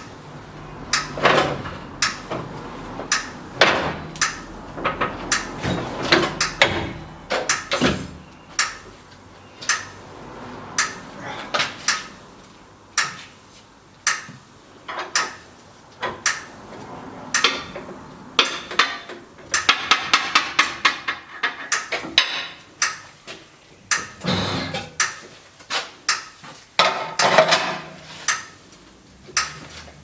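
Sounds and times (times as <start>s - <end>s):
metal tools clinking on wheel rim: 18.4s - 22.7s.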